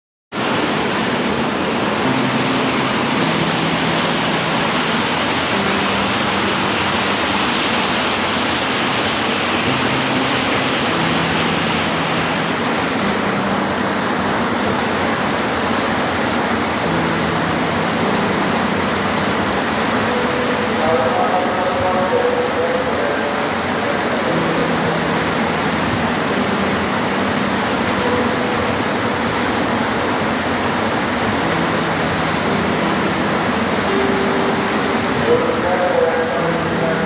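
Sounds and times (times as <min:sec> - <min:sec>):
steady rain falling: 0:00.4 - 0:37.0.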